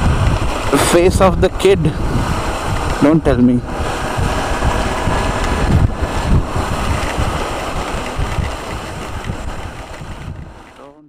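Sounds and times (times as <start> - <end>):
motorcycle engine running: 0.0 - 11.0
wind buffeting microphone: 0.0 - 11.0.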